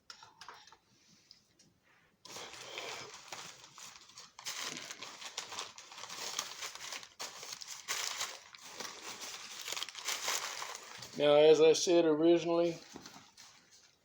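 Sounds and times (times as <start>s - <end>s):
packing material rustling and crinkling: 2.2s - 11.9s, 12.5s - 14.0s.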